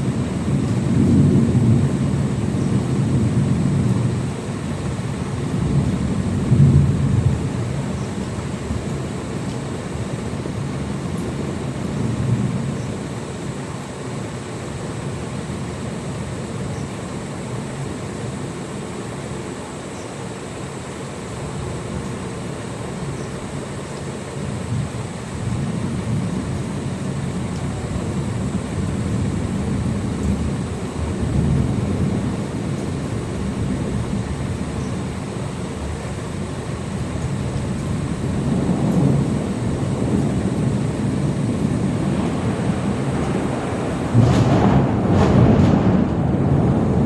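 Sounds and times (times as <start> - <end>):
rolling thunder: 0.0 - 14.2, 24.5 - 47.0.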